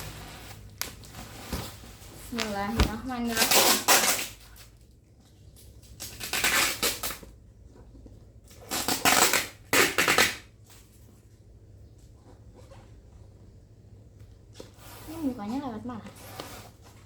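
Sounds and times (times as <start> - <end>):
packaging crinkling: 0.1 - 4.8.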